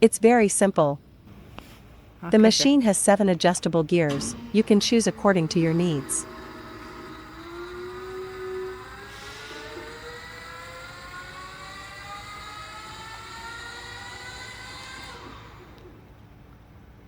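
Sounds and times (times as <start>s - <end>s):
electric motor whining: 4.1s - 16.2s.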